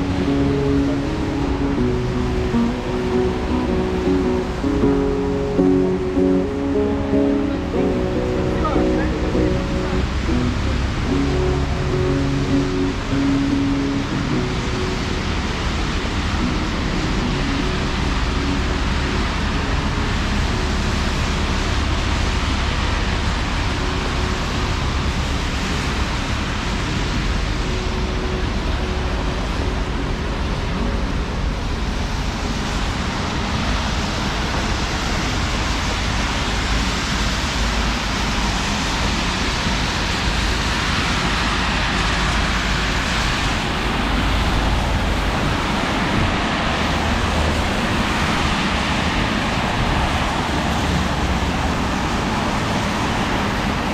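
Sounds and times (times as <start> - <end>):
traffic on wet street: 0.0 - 53.9.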